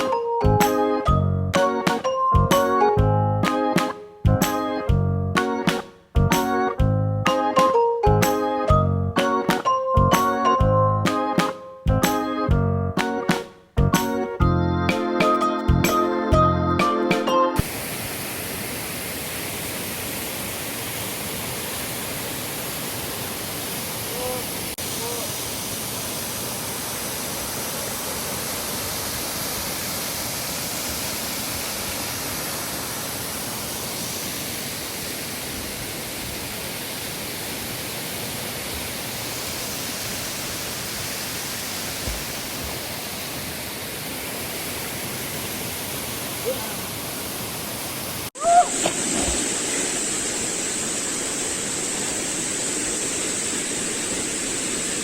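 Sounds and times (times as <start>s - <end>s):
stream rushing over rocks: 17.6s - 55.0s.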